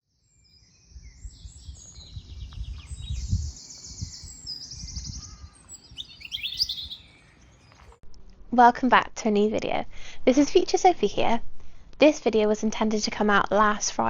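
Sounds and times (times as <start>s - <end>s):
bird trilling buzzy phrases: 2.8s - 7.9s.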